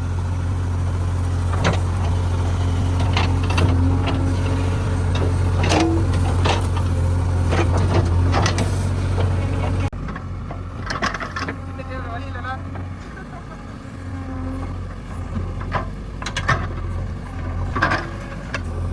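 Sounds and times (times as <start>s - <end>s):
diesel engine running: 0.0s - 18.9s
knocks and clanks: 1.4s - 11.7s, 14.7s - 18.8s.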